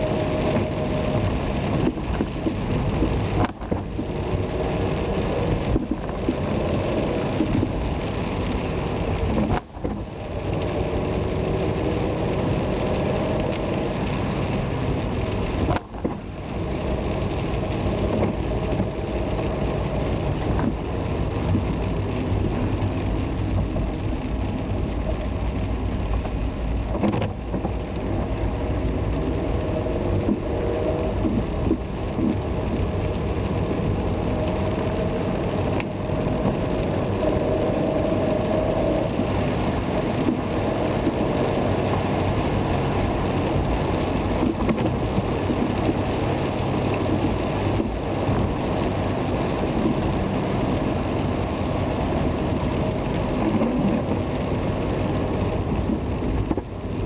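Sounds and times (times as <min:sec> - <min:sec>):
rain hissing: 0:00.0 - 0:57.0
road noise: 0:00.0 - 0:57.0.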